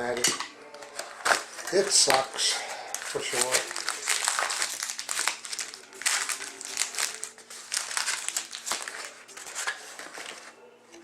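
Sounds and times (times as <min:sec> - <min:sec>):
plastic wrapping crinkling: 0:00.2 - 0:11.0.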